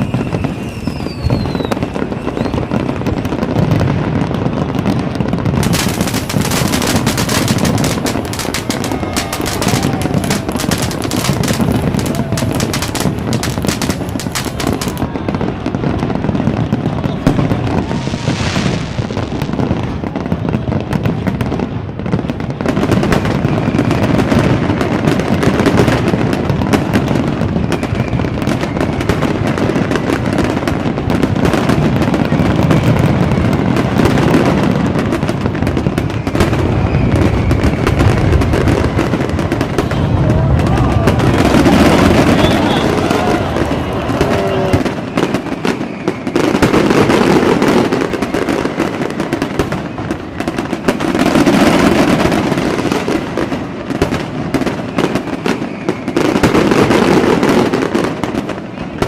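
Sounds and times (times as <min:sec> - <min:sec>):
fireworks crackling bursts: 0:00.0 - 0:59.0
fireworks whistles: 0:00.0 - 0:59.0.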